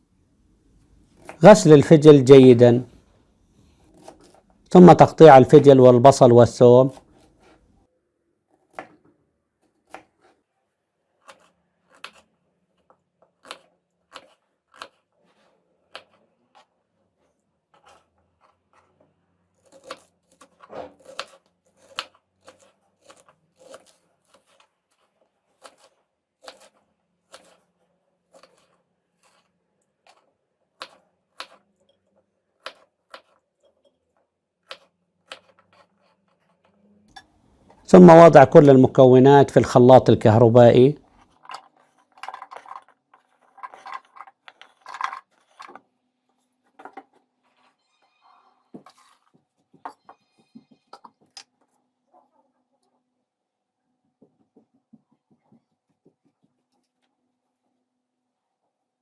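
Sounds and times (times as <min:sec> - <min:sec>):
knife cutting on cutting board: 0:03.7 - 0:04.5, 0:06.9 - 0:07.7, 0:11.1 - 0:19.0, 0:19.6 - 0:31.7, 0:34.6 - 0:36.8, 0:48.8 - 0:51.2.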